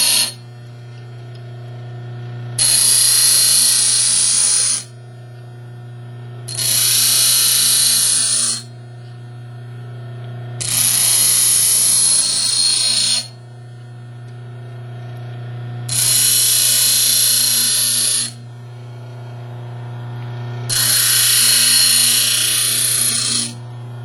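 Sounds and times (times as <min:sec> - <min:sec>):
bench grinder grinding steel: 0:00.0 - 0:00.5, 0:02.6 - 0:04.9, 0:06.5 - 0:08.7, 0:10.6 - 0:13.4, 0:15.9 - 0:18.5, 0:20.7 - 0:23.9
grinder motor humming: 0:00.0 - 0:24.0.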